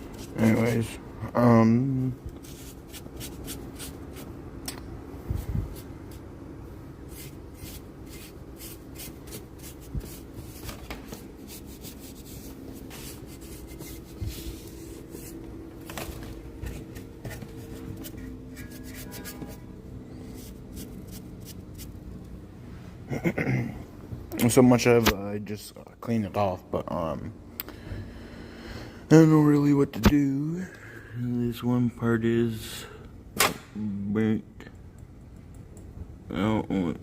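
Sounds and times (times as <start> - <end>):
faint steady hum: 0.0 - 37.0
hands rubbing and moving things: 7.1 - 19.7.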